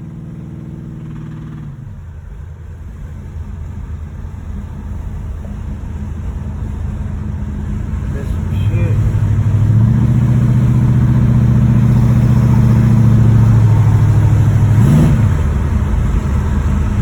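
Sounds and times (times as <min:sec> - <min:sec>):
engine with knocking rod: 0:00.0 - 0:02.2
low rumble: 0:00.0 - 0:17.0.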